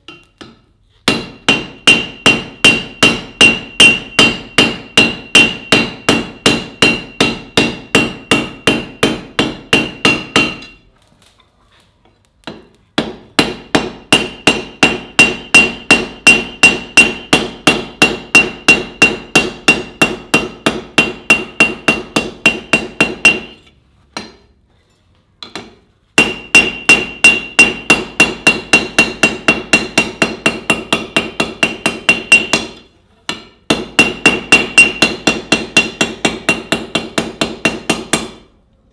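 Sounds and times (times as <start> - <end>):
hammer striking steel on anvil: 0.0 - 10.9, 12.4 - 24.6, 25.4 - 38.5.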